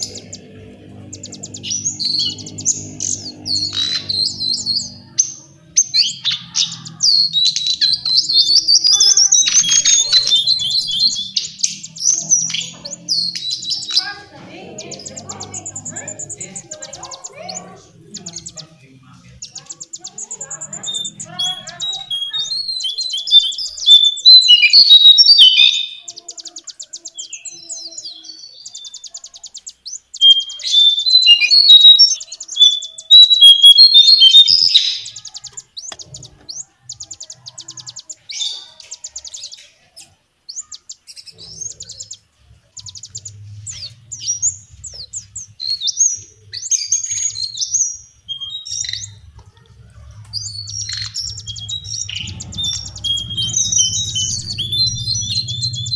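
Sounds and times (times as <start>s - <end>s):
bird singing trills and warbles: 0.0s - 55.9s.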